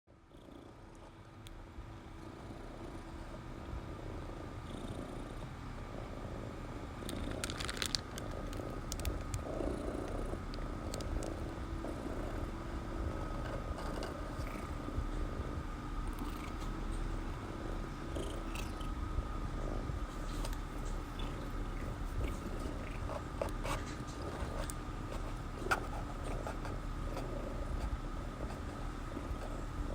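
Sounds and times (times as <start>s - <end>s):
cat rumbling: 2.1s - 29.9s
small clicks and mouth noises: 7.0s - 11.5s, 20.2s - 29.5s.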